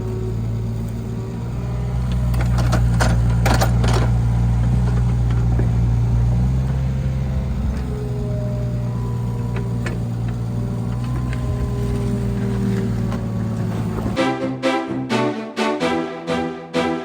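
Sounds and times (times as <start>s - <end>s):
tractor engine running: 0.0s - 14.4s.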